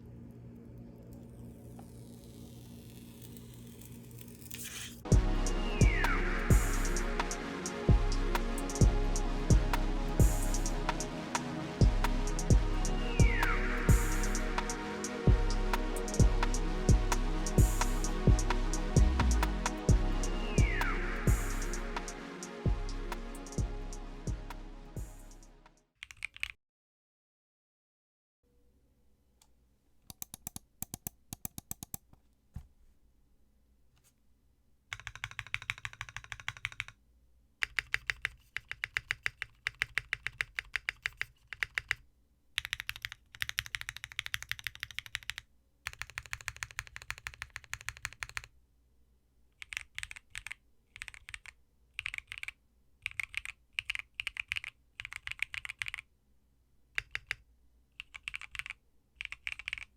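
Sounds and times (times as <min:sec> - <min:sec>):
mechanical keyboard typing: 0:26.0 - 0:26.6, 0:30.1 - 0:32.1, 0:34.9 - 0:37.0, 0:37.6 - 0:42.0, 0:42.6 - 0:48.5, 0:49.6 - 0:56.1, 0:57.0 - 0:57.4, 0:58.0 - 0:59.9.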